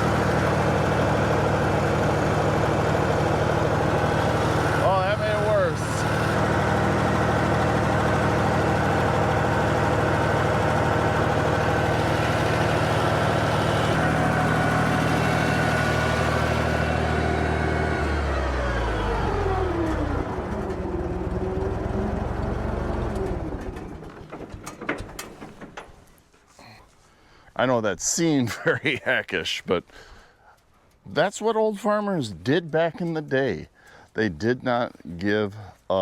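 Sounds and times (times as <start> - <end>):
tractor engine running: 0.0 - 26.4.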